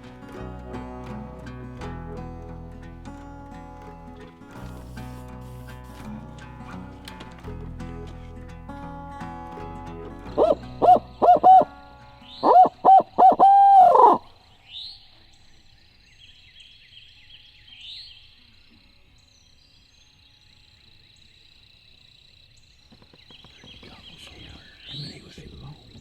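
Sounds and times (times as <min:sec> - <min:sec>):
songbirds chirping: 0:00.0 - 0:26.0
owl hoots: 0:10.3 - 0:15.0.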